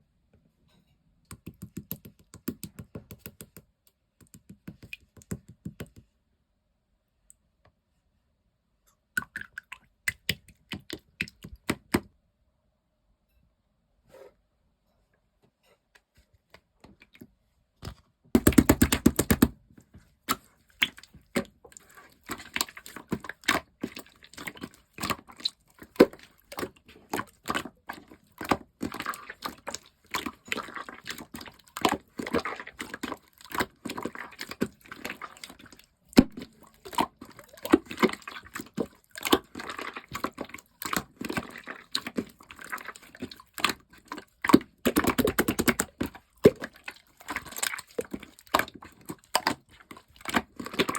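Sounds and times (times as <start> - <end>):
slime clicking and popping: 18.4 - 19.5.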